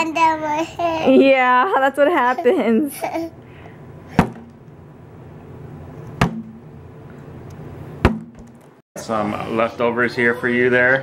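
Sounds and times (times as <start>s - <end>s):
sharp knocks: 4.2s - 4.6s, 6.2s - 6.7s, 8.0s - 8.6s.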